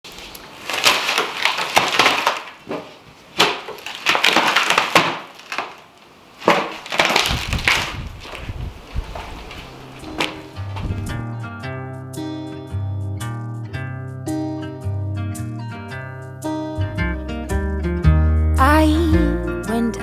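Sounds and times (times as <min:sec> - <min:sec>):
wood cracking and splintering: 0:00.1 - 0:11.2.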